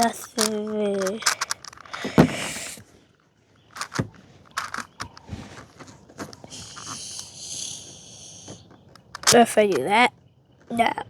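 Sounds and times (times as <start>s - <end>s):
puzzle cube plastic clicks: 0.0s - 2.8s, 3.8s - 7.8s, 8.8s - 9.9s.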